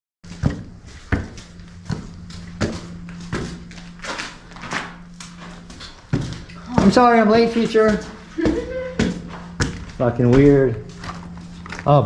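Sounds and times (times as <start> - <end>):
steady low hum: 0.2 - 12.0
regular thumps: 5.6 - 11.9.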